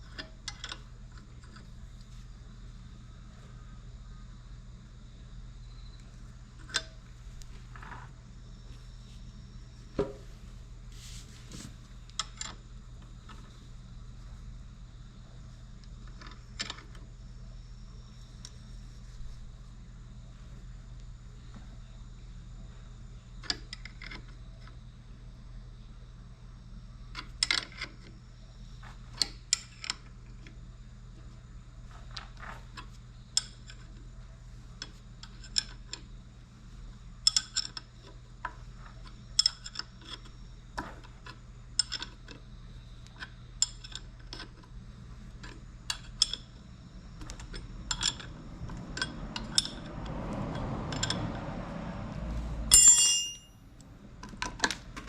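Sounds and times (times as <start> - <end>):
low steady hum: 0.0 - 55.0
rustling noise: 10.2 - 12.0, 18.6 - 19.7
metal tools clinking and tapping: 52.7 - 53.5.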